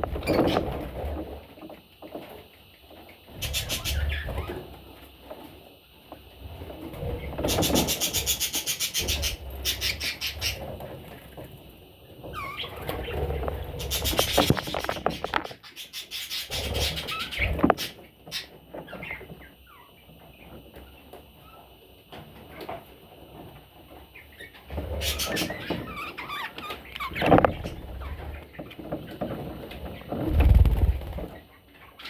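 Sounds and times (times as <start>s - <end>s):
budgerigars chirping: 3.4s - 4.4s, 7.4s - 10.6s, 12.4s - 19.2s
scratching and rustling: 6.2s - 19.4s, 21.6s - 31.5s.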